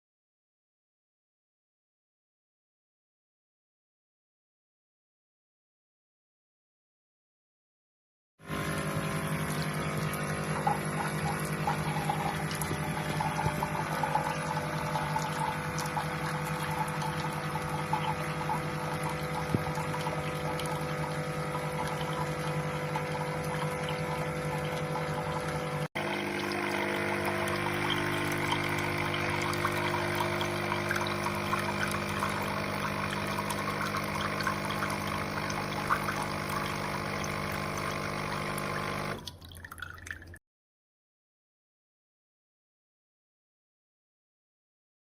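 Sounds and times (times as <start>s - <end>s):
coffee machine pump humming: 8.4s - 39.4s
liquid flowing: 8.5s - 40.4s.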